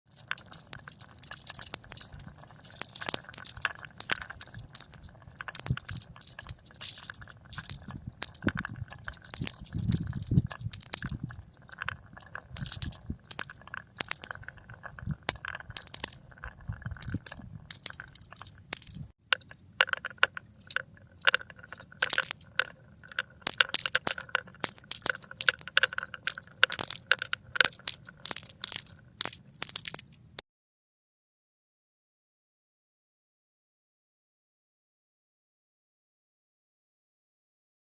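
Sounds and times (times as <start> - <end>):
marbles clicking on tracks: 0.1 - 30.3.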